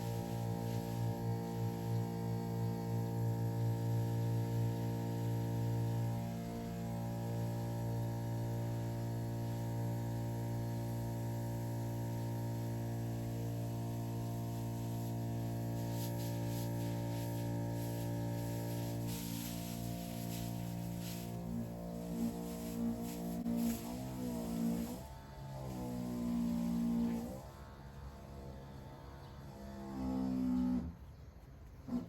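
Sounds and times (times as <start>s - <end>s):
sprayer motor humming: 0.0s - 28.4s.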